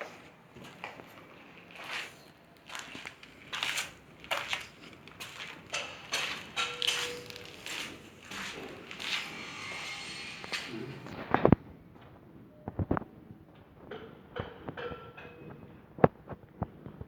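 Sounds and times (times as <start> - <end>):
footsteps on gritty concrete: 0.0 - 11.2.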